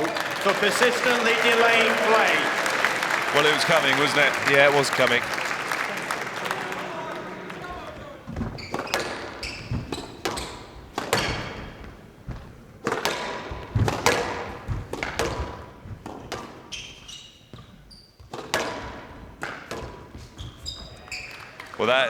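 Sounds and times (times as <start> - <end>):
sneakers squeaking on court: 7.6 - 21.6
squash ball striking rackets and walls: 8.3 - 21.3.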